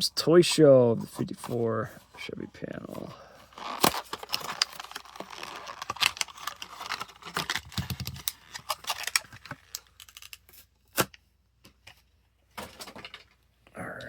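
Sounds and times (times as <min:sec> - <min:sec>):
plastic blister pack crinkling: 0:03.5 - 0:10.6.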